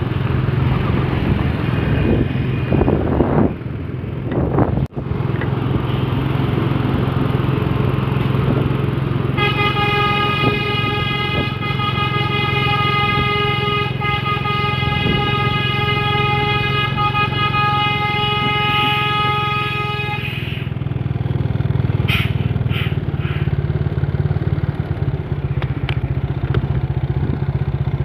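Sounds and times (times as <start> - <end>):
truck engine running: 0.0 - 28.0
truck musical horn chord: 9.3 - 20.8.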